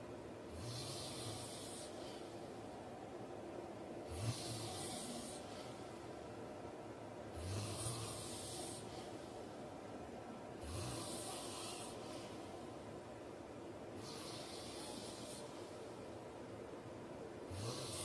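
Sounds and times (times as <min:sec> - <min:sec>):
man snoring: 0:00.5 - 0:02.2, 0:04.0 - 0:05.8, 0:07.3 - 0:09.1, 0:10.6 - 0:12.3, 0:14.0 - 0:15.6, 0:17.5 - 0:18.0.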